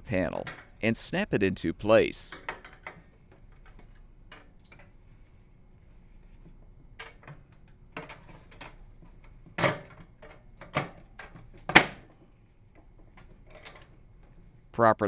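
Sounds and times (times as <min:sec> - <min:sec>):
handling knocks: 0:00.0 - 0:01.0, 0:02.0 - 0:14.7
panels snapping into place: 0:06.0 - 0:14.5.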